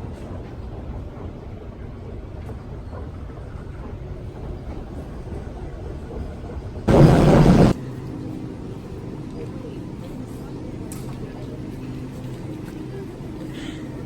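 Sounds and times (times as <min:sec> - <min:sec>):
car engine rumbling: 0:06.9 - 0:07.8
loud rush of noise: 0:06.9 - 0:07.8.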